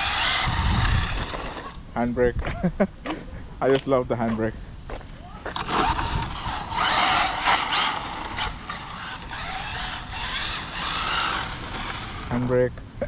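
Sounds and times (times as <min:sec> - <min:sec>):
electric motor whining: 0:00.0 - 0:01.8, 0:05.5 - 0:12.5
tyres rushing on pavement: 0:00.0 - 0:01.9, 0:05.3 - 0:12.5.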